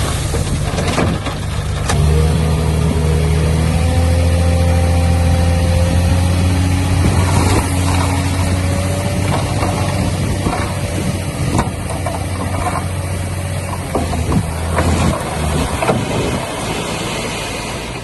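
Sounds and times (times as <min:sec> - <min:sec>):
clanks and rattles: 0:00.0 - 0:03.0, 0:07.0 - 0:16.5
heavy machinery diesel engine: 0:00.0 - 0:18.0.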